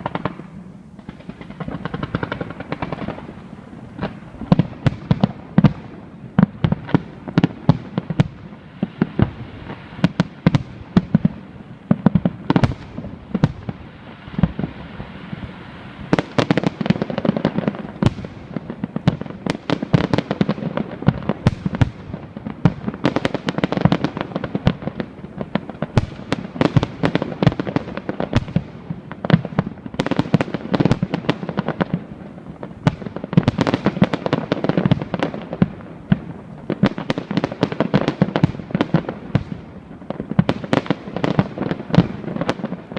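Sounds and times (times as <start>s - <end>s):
aerial fireworks exploding: 0.0s - 42.9s.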